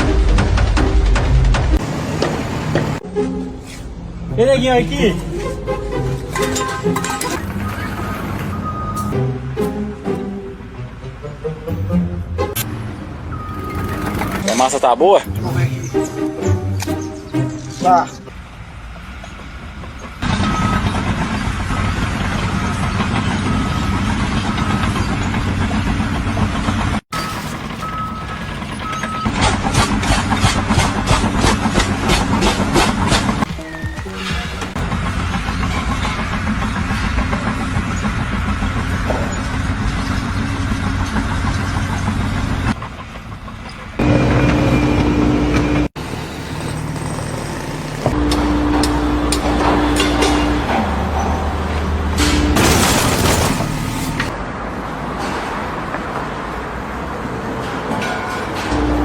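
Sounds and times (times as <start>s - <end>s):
heavy vehicle engine running: 0.0s - 14.7s, 18.3s - 55.9s, 57.9s - 59.0s
backup alarm beeping: 7.6s - 9.2s, 27.1s - 29.4s.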